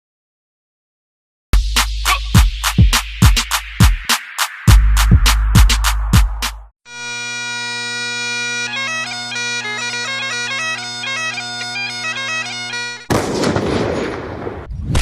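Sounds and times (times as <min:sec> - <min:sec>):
bagpipes playing a tune: 0:06.9 - 0:13.1.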